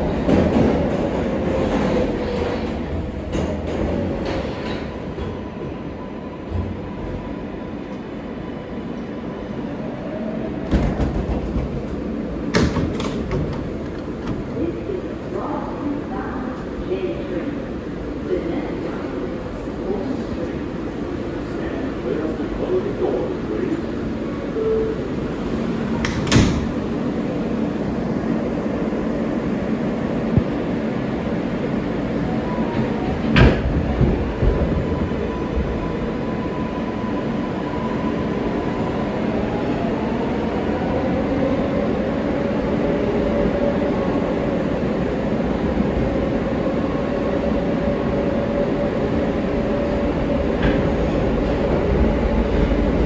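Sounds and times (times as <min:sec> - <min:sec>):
subway car rumbling on track: 0:00.0 - 0:53.0
sliding doors closing thud: 0:10.7 - 0:14.7, 0:24.9 - 0:26.9.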